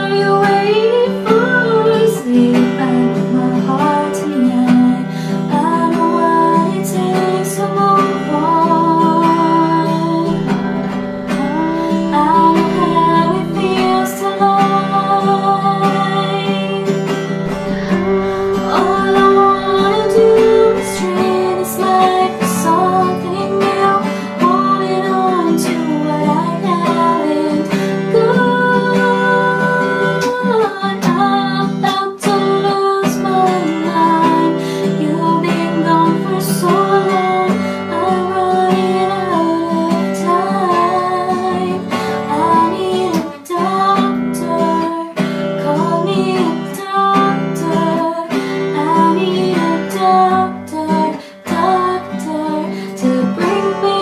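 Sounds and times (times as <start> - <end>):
acoustic guitar strumming: 0.0 - 54.0
woman singing: 0.0 - 54.0.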